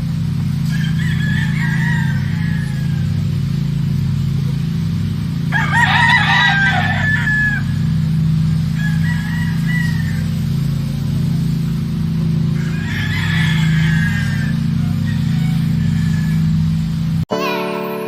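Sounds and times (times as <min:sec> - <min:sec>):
rooster crowing: 0:00.6 - 0:04.1, 0:05.3 - 0:11.0, 0:12.3 - 0:16.9
fowl calling: 0:00.6 - 0:11.0, 0:12.2 - 0:17.0.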